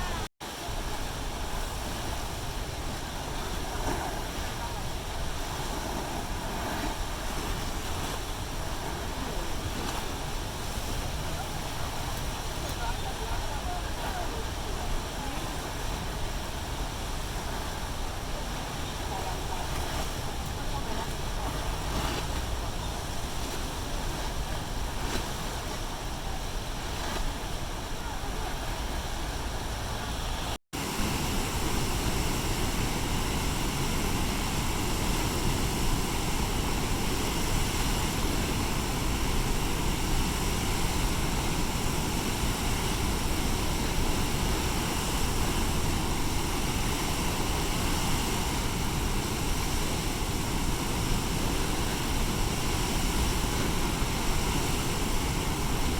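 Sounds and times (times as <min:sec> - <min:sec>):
water rushing heavily: 0:00.0 - 0:55.9.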